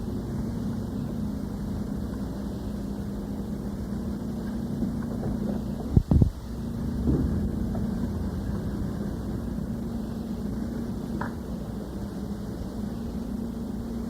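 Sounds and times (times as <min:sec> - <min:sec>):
recording hum and hiss: 0:00.0 - 0:14.0
loud low thumps: 0:06.0 - 0:08.9.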